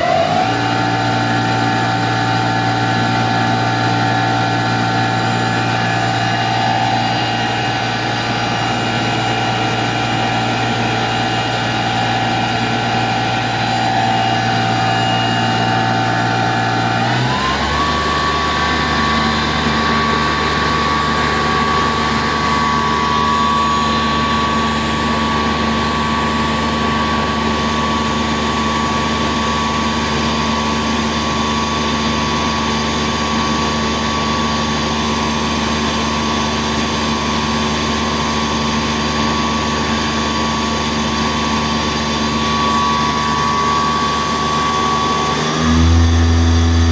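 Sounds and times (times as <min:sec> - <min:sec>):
lathe machine whine and hum: 0:00.0 - 0:46.9.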